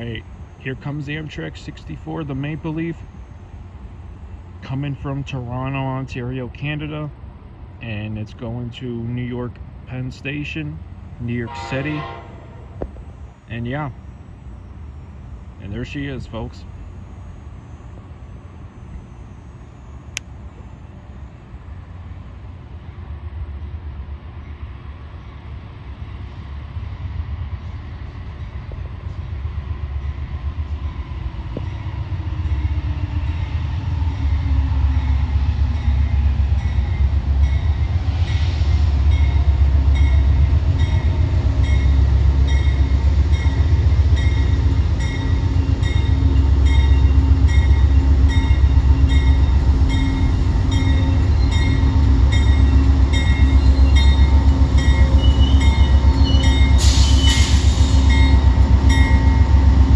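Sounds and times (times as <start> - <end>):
locomotive engine rumble: 0.0 - 59.9
locomotive bell ringing: 40.0 - 59.7.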